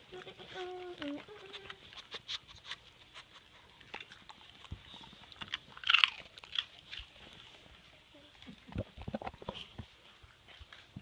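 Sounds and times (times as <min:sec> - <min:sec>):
crunching pretzels: 0:00.1 - 0:07.2.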